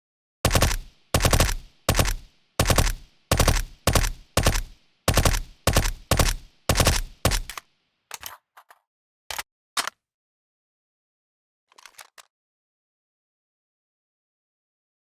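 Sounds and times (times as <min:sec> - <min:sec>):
suppressed submachine gun bursts: 0:00.5 - 0:07.6.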